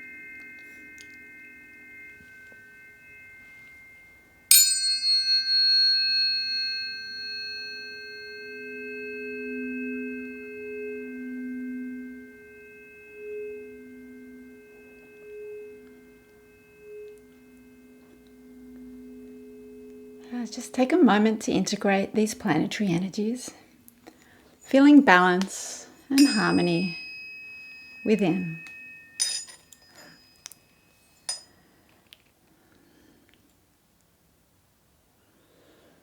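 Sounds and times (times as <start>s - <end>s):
tuning fork struck metallic ping: 0.0s - 21.8s, 26.1s - 31.5s
tuning forks ringing: 0.0s - 33.2s.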